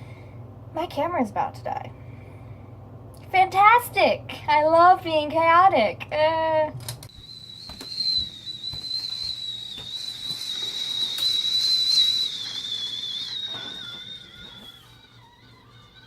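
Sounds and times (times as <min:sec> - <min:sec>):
high whistle-like tone: 0:07.1 - 0:16.0.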